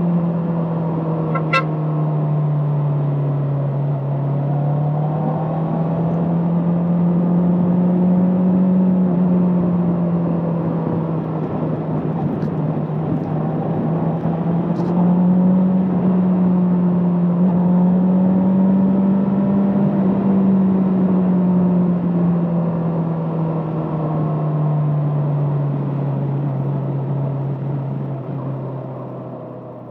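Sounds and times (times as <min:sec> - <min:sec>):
wind and road rush: 0:00.0 - 0:29.9
motorcycle engine running: 0:01.3 - 0:01.9.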